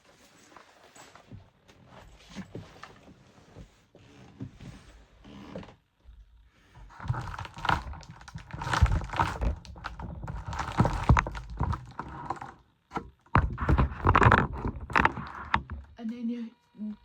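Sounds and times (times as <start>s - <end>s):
rustling: 6.8s - 12.6s
sharp knocks and clatters: 7.0s - 16.0s.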